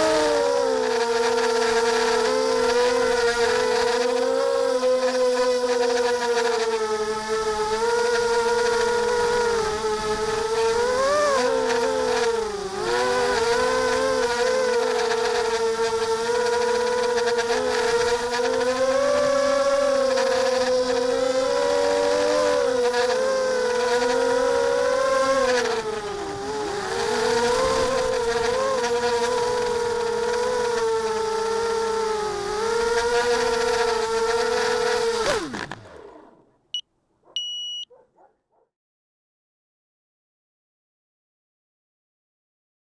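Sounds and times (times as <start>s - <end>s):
drone propellers whining: 0.0s - 36.6s
short electronic beeps: 37.4s - 37.9s.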